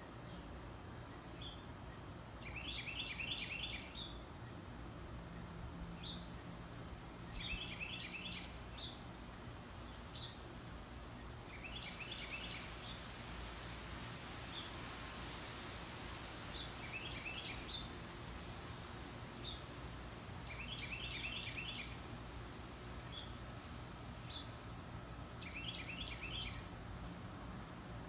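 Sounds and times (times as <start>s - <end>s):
birds chirping: 16.5s - 24.5s.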